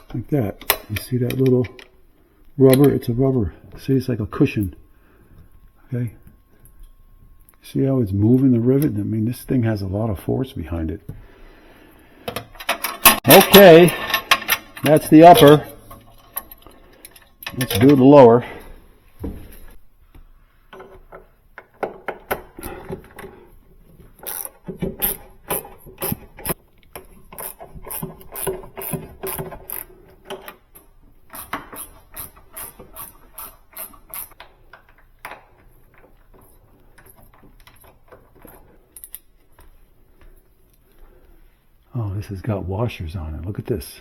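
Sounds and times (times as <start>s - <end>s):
tool and metal handling: 12.3s - 18.3s
ratchet wrench clicking: 24.2s - 26.6s, 27.4s - 29.9s, 31.3s - 34.4s.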